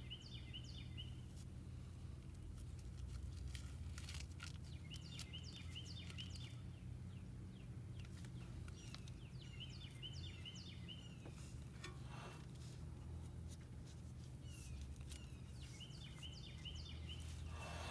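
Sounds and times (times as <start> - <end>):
bird chirping: 8.4 - 11.4, 14.4 - 17.9.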